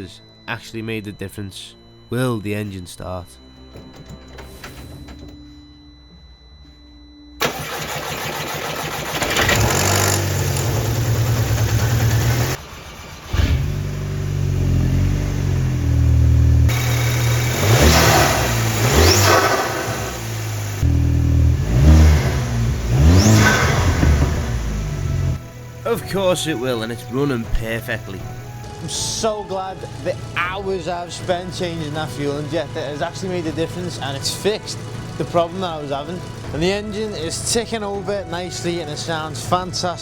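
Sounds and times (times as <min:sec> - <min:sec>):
car engine revving: 0:07.4 - 0:37.8
car engine cranking and starting: 0:07.4 - 0:39.7.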